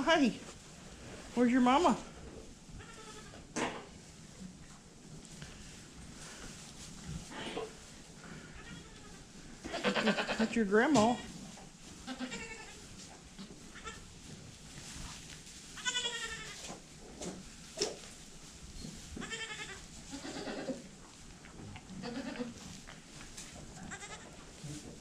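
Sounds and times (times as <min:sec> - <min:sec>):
goats bleating: 0:08.3 - 0:10.5, 0:15.8 - 0:16.6, 0:19.2 - 0:20.8, 0:22.0 - 0:22.6, 0:23.8 - 0:24.3.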